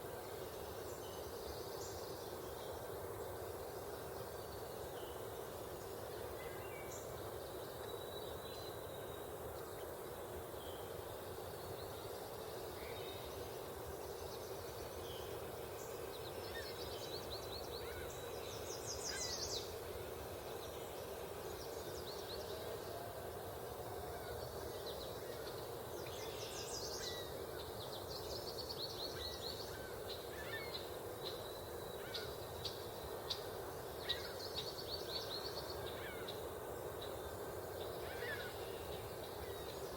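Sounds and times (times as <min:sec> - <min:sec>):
small birds singing and trilling: 0:24.3 - 0:39.9.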